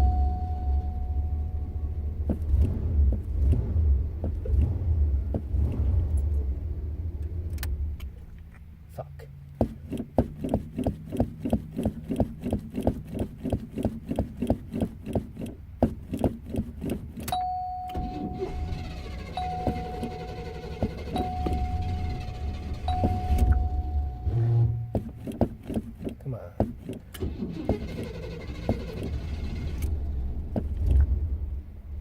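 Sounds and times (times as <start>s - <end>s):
warning chime: 0.0s - 1.8s, 17.4s - 25.0s
car engine cranking: 0.0s - 8.8s, 9.4s - 32.0s
low rumble: 0.0s - 8.9s, 18.2s - 25.0s, 28.8s - 32.0s.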